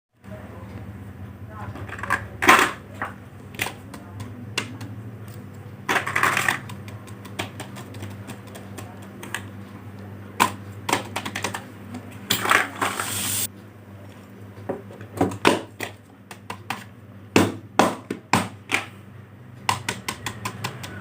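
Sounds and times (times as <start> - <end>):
plastic toys clicking and clattering: 5.9 - 9.5, 10.9 - 11.7.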